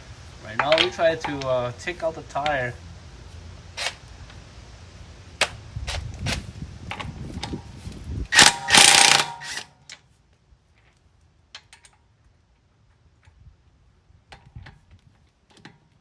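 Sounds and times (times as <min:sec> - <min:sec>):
wrench clicking: 0:08.4 - 0:09.7.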